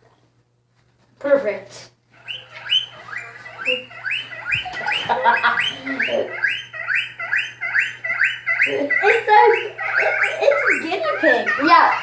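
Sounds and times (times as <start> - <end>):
guinea pig squeaking: 2.1 - 12.0.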